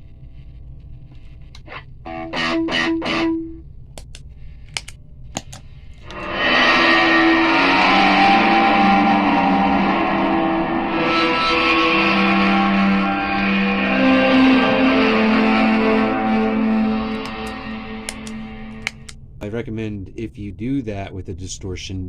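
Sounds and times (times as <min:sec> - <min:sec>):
distorted electric guitar: 0:01.6 - 0:03.6, 0:06.0 - 0:19.1
sharp clicks: 0:04.0 - 0:05.7, 0:18.2 - 0:19.2.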